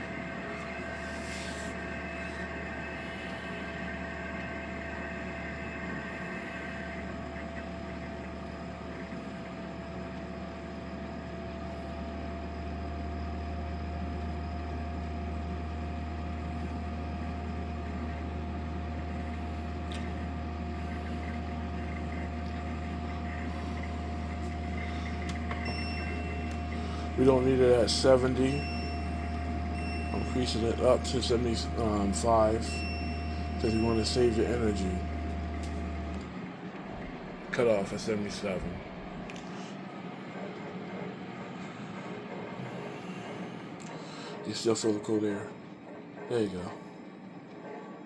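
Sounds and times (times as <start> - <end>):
air conditioner humming: 0.0 - 12.3, 13.0 - 48.0
thin steady whine: 0.0 - 48.0.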